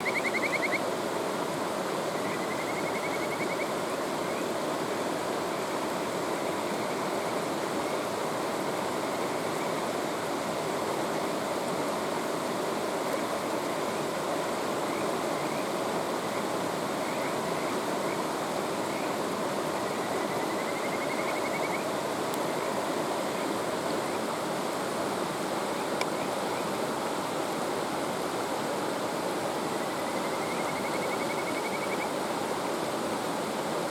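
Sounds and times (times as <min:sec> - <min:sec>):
frogs calling with high notes: 0:00.0 - 0:00.9, 0:02.1 - 0:04.5, 0:16.3 - 0:18.2, 0:18.8 - 0:21.9, 0:29.8 - 0:32.2
mountain stream rushing: 0:00.0 - 0:33.9.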